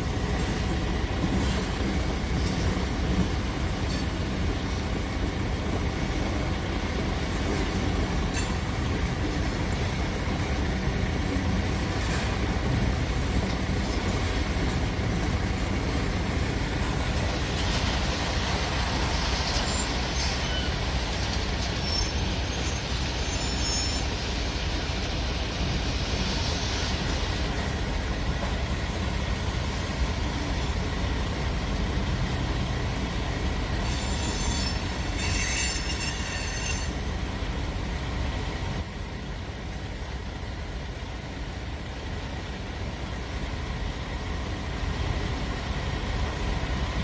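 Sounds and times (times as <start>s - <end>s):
freight train rumbling past: 0.0s - 47.0s
high-pitched wheel squeals: 21.8s - 24.1s, 33.8s - 37.0s.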